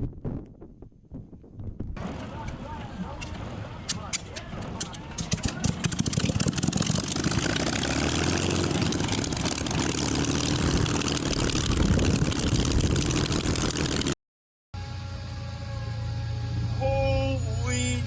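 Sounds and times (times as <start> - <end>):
aircraft engine rushing: 2.0 - 14.2.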